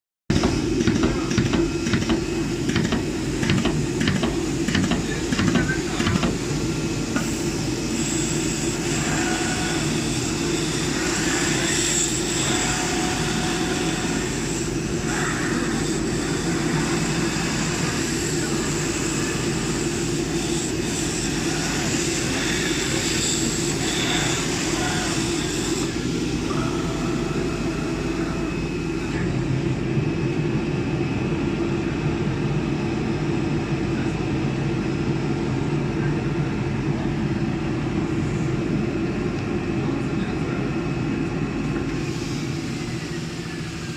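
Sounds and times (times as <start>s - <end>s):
cutting machine mechanical drone: 0.3s - 29.8s.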